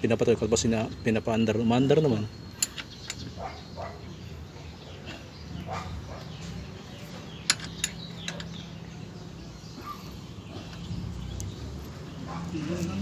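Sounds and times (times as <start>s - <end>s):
sharp metallic clicks: 2.5s - 3.3s, 7.4s - 8.6s.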